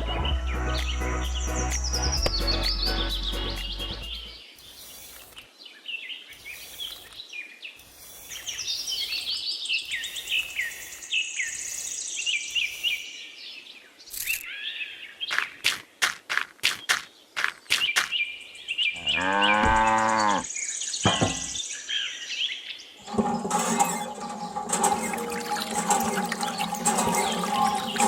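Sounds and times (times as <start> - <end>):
small birds chirping: 0.3 - 23.0
sharp knocks: 21.0 - 21.6.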